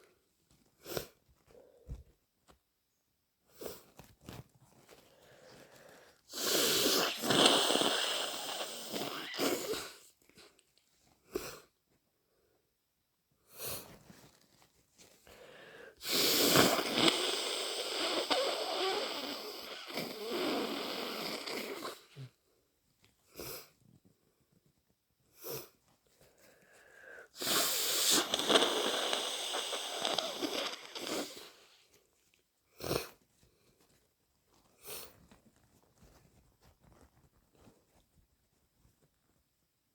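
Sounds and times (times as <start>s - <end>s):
person sniffing: 5.3s - 10.1s, 15.3s - 22.4s, 26.4s - 31.8s, 34.8s - 35.2s
person blowing nose wetly: 6.3s - 10.0s, 15.5s - 22.3s, 27.3s - 31.8s.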